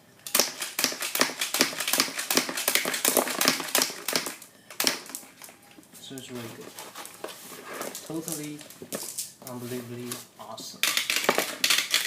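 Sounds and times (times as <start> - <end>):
toy marble shooter clicking: 0.2 - 5.2, 10.8 - 12.0.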